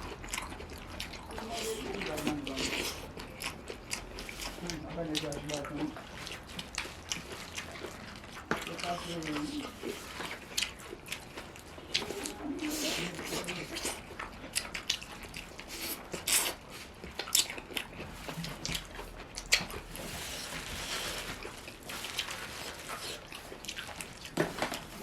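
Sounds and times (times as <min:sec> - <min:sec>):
chewing and mouth smacks: 0:00.0 - 0:25.0.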